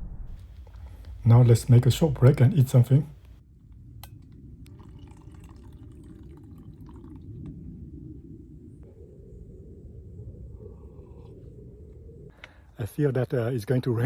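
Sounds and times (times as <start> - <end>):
low rushing noise: 0.0 - 4.7.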